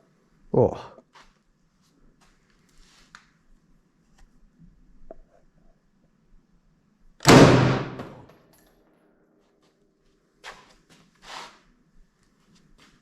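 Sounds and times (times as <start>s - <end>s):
gunshot echoing: 7.2s - 8.3s.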